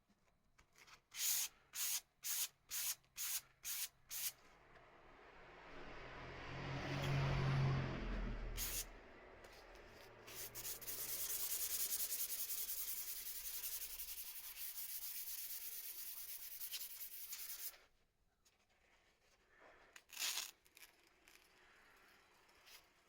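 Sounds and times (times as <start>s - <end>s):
hand sanding with abrasive sheet: 1.2s - 4.4s, 8.6s - 8.9s, 10.2s - 17.8s.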